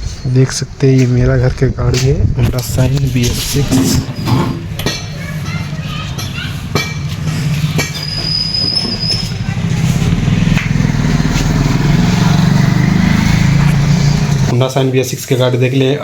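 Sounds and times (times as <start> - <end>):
motorcycle engine running: 3.7 - 14.5
brief high squeal: 8.0 - 9.4.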